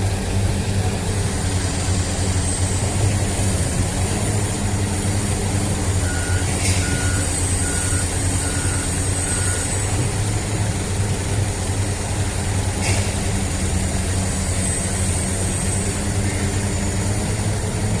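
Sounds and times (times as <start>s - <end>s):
heavy diesel engines running: 0.0s - 18.0s.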